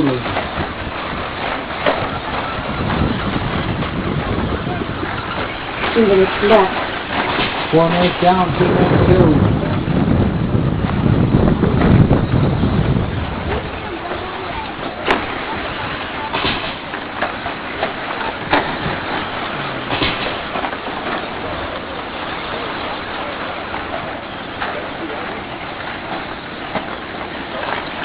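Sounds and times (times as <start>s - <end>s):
electric motor and tyre noise: 0.0s - 28.0s
sharp knocks: 16.3s - 21.4s.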